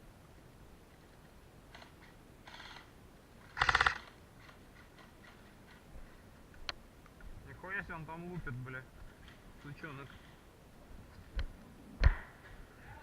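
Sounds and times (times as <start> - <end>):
airsoft guns firing bursts: 3.6 - 4.2.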